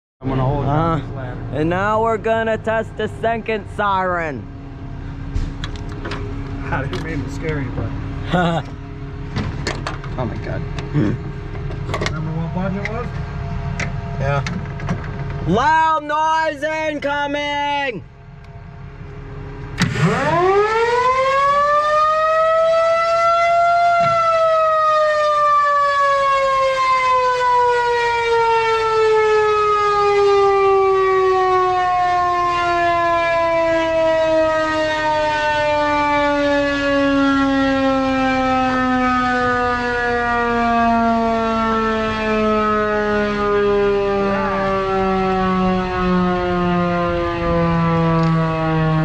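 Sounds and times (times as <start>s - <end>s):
rotating siren wailing: 19.8s - 49.0s.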